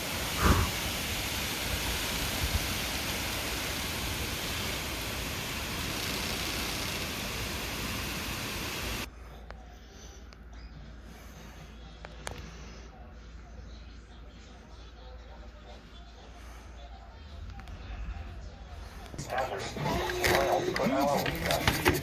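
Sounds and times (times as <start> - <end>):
radio static hiss: 0.0 - 9.1, 19.0 - 22.0.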